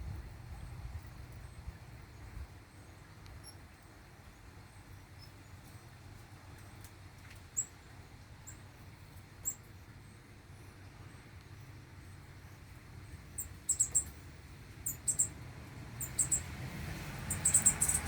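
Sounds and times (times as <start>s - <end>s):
small birds chirping: 7.5s - 8.7s, 9.4s - 18.0s.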